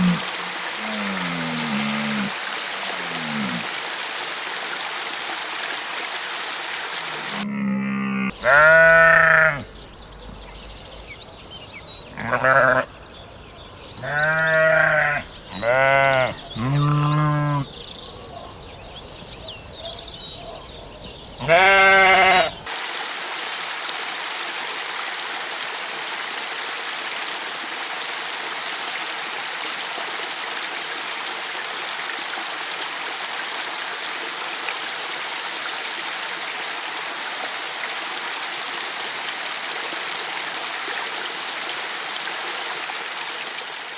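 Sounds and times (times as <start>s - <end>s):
running water: 0.0s - 7.5s, 21.5s - 43.9s
sheep or goats bleating: 8.3s - 9.6s, 12.2s - 12.8s, 14.0s - 17.6s, 21.4s - 22.6s.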